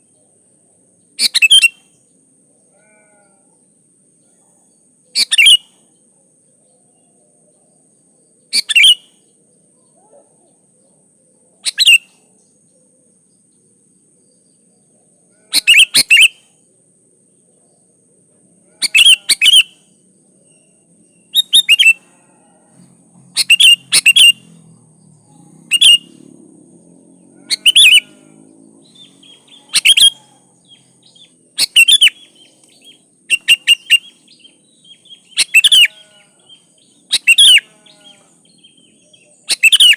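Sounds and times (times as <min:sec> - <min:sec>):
bird whistled calls: 0:01.2 - 0:01.8, 0:05.2 - 0:05.7, 0:08.5 - 0:09.1, 0:11.6 - 0:12.1, 0:15.6 - 0:16.4, 0:18.9 - 0:19.8, 0:21.3 - 0:22.0, 0:23.4 - 0:24.5, 0:25.7 - 0:26.1, 0:27.5 - 0:28.2, 0:28.9 - 0:36.1, 0:37.1 - 0:37.7, 0:39.2 - 0:39.9.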